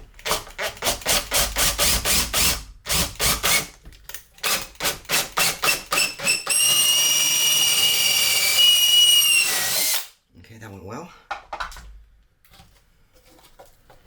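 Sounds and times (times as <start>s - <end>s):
power drill whining: 4.4s - 10.1s.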